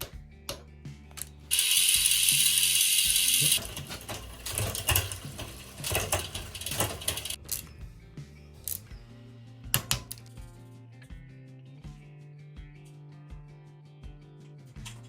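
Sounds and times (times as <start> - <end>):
bicycle freehub ratcheting: 1.5 - 7.6.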